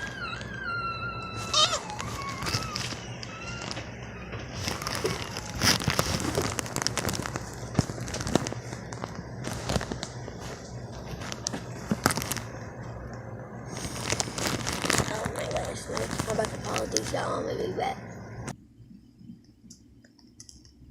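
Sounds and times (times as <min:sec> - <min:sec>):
high vocal squeal: 0:00.0 - 0:06.4
slime squeezed with crackly pops: 0:01.2 - 0:12.5, 0:13.7 - 0:17.3.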